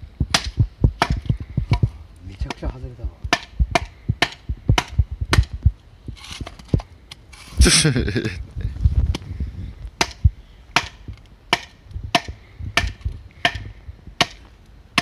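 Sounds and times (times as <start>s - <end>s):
blade chopping into log: 0.3s - 2.7s.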